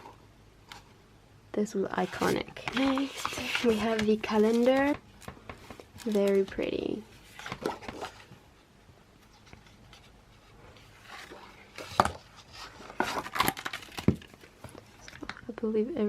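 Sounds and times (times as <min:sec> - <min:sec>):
paper pages rustling: 0:02.0 - 0:08.4, 0:09.2 - 0:15.4.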